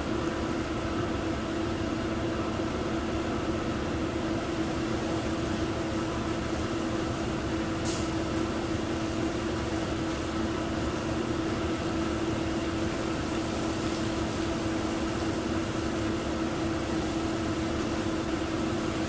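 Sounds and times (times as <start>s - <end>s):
brief hiss: 7.8s - 8.2s.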